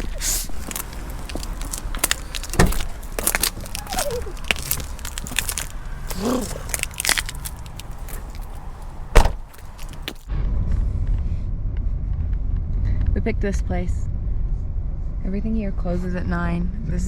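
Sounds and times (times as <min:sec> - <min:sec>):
car rumbling on the move: 0:00.0 - 0:10.3.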